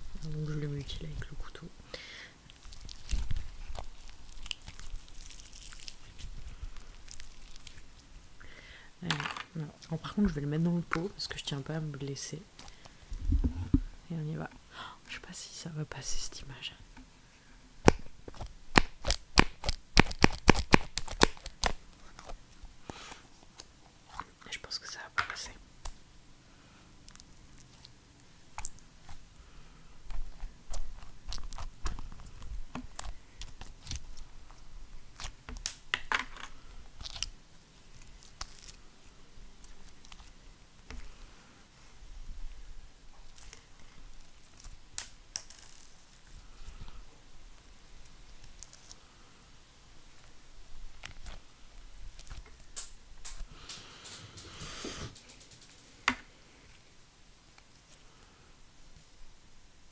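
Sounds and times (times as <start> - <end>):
slime squelching and popping: 2.5 - 8.1, 17.8 - 22.4.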